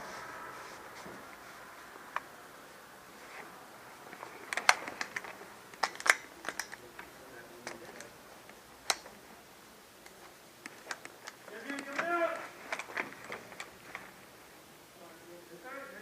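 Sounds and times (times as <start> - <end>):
sharp clicks and snaps: 4.1 - 9.2, 10.0 - 14.1.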